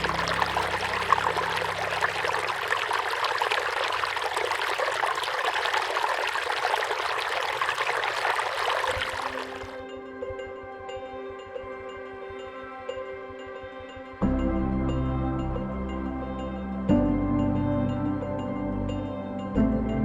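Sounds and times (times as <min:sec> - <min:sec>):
stream splashing over rocks: 0:00.0 - 0:09.8.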